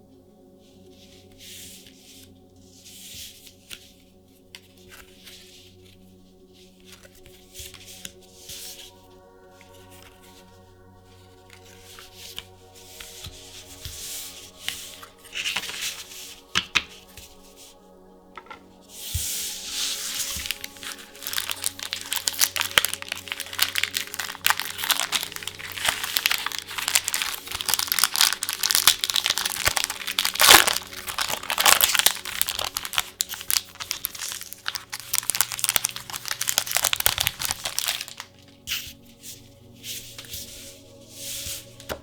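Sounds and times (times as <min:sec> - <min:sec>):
foil wrapper crinkling: 0:19.5 - 0:38.6.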